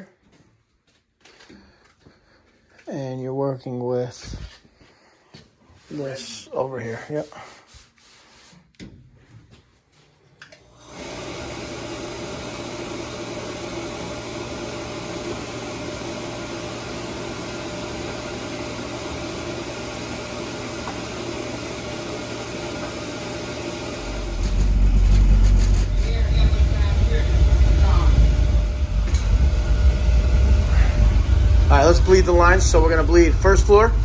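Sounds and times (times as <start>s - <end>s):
low rumble: 24.2s - 34.0s
boiler whooshing hiss: 26.1s - 34.0s.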